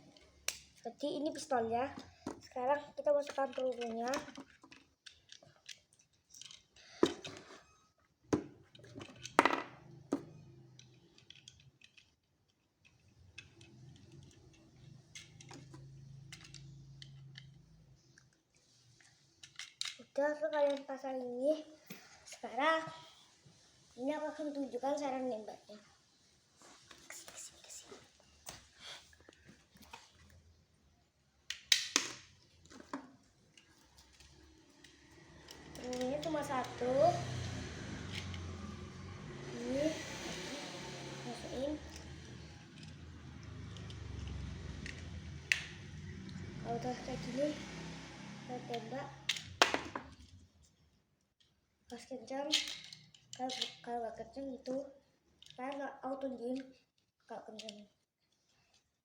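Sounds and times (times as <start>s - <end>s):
plastic pieces clicking and clattering: 3.2s - 7.5s, 10.8s - 17.6s, 19.4s - 20.0s, 31.5s - 34.9s, 52.5s - 53.8s
toy gun plastic snap: 31.5s - 32.2s.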